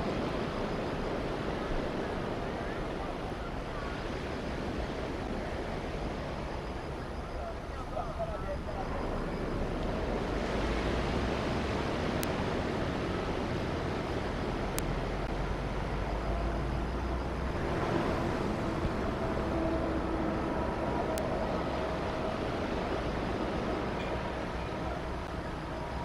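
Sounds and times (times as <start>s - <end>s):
faint steady tones: 0.0s - 26.0s
train rumbling: 0.0s - 26.0s.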